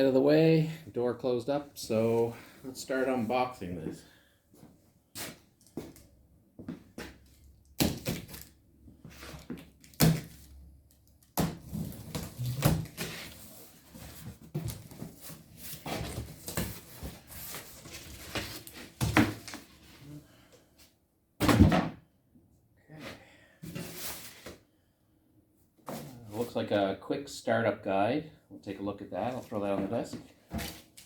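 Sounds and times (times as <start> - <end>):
cardboard rustling and scraping: 11.6 - 20.0.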